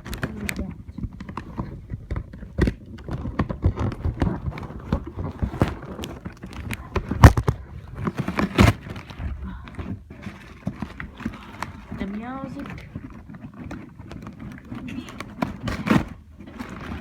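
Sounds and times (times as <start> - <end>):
cardboard and plastic crinkling: 0.0 - 17.0.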